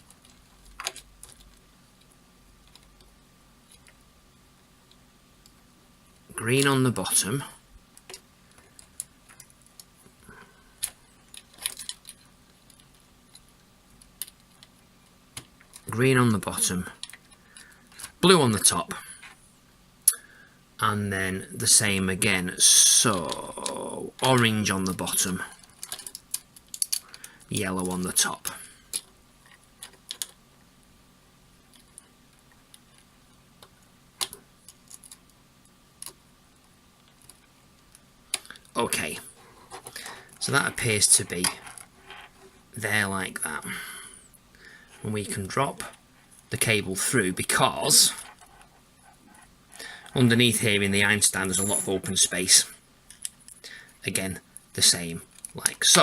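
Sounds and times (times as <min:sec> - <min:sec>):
clicks of wire connectors: 0:25.6 - 0:27.4.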